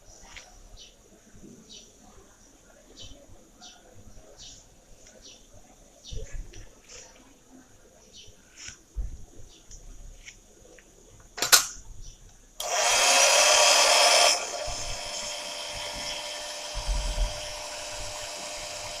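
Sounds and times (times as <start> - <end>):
washing machine motor whirring: 12.6 - 19.0.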